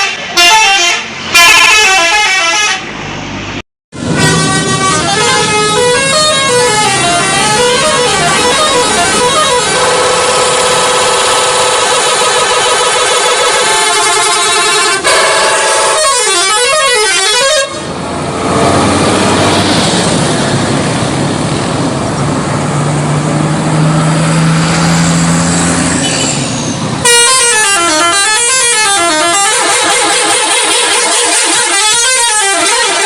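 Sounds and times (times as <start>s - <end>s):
warbling multi-tone bus horn: 0.0s - 2.9s, 4.0s - 20.4s, 24.3s - 33.0s
engine and road noise: 0.0s - 33.0s.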